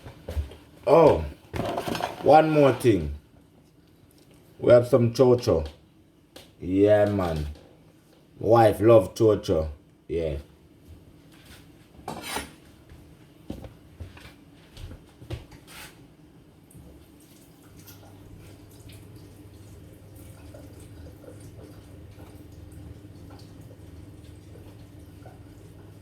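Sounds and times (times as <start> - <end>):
water dripping: 16.7 - 26.0.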